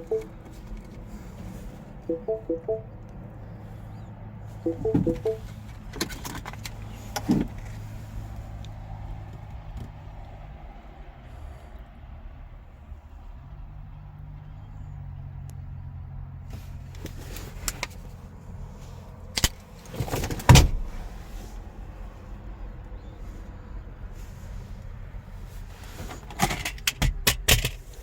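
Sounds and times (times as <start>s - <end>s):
knocks and clicks on a car: 4.7s - 5.4s.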